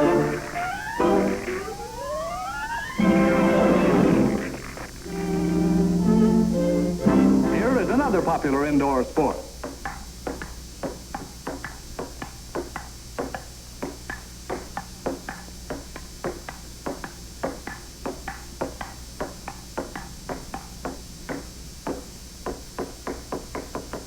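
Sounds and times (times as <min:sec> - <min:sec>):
low hum: 0:00.0 - 0:08.5.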